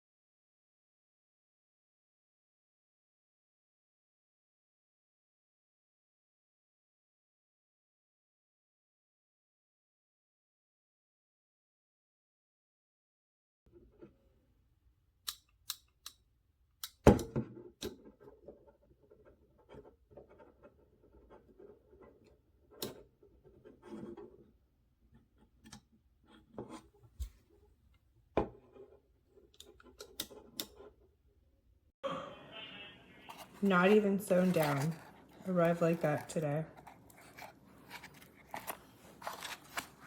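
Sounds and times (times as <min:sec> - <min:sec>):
metal multitool clicks and snaps: 0:15.2 - 0:16.2, 0:16.8 - 0:17.0
soft rubbing and fumbling: 0:33.3 - 0:40.0.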